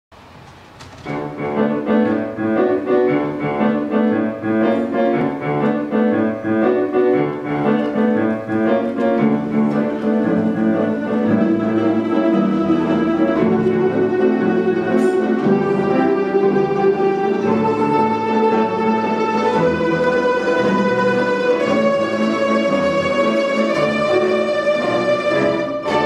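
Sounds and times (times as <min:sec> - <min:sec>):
folk instrument ensemble playing jazz: 0:00.9 - 0:26.0.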